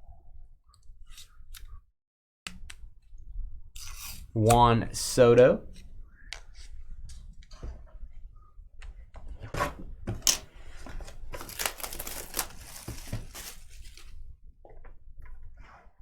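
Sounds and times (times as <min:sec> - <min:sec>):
cards clicking and rustling: 0:10.3 - 0:14.1
cards crinkling and sliding: 0:10.3 - 0:14.2.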